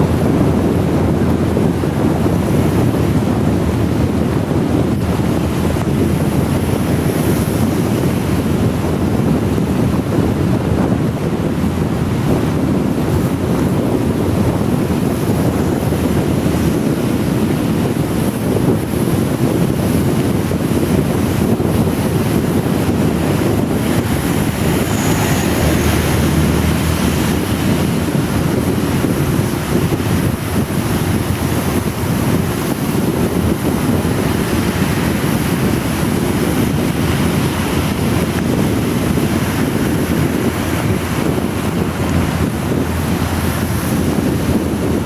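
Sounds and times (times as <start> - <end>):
wind buffeting microphone: 0.0 - 45.0
heavy rain: 12.6 - 45.0.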